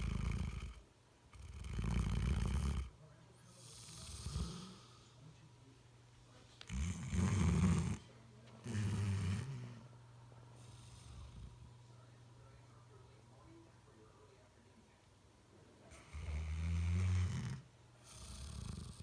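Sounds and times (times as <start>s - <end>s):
dog snoring: 0.0s - 2.9s, 3.5s - 5.2s, 6.6s - 9.9s, 10.6s - 11.7s, 15.9s - 19.0s.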